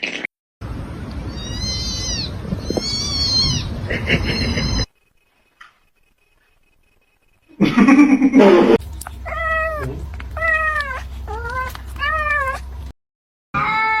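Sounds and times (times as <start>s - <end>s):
cat meowing: 1.3s - 3.7s, 9.2s - 12.7s.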